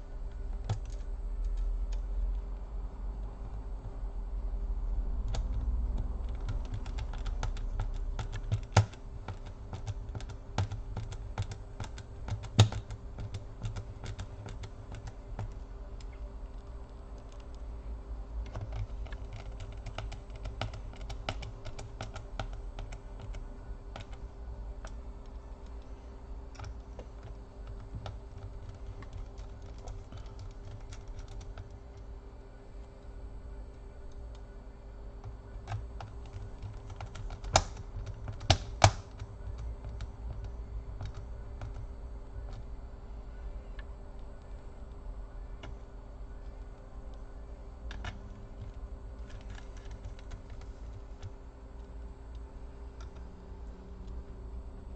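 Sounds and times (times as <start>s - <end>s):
low steady hum: 0.0s - 54.9s.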